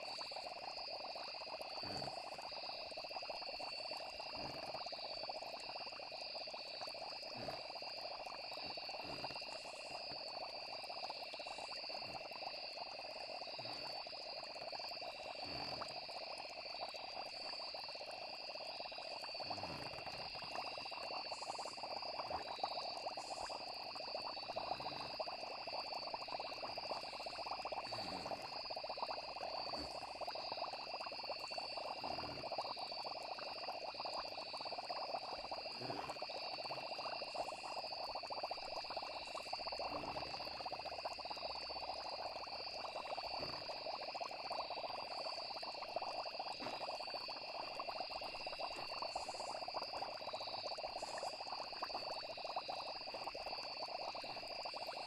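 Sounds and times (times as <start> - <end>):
crickets chirping: 0.0 - 55.0
frogs calling: 0.0 - 55.0
short low plops: 46.6 - 49.2.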